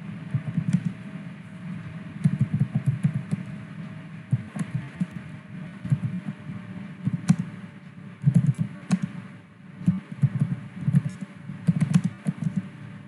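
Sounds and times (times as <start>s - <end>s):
computer keyboard key clacks: 7.1s - 7.5s, 8.3s - 9.1s, 9.9s - 12.6s.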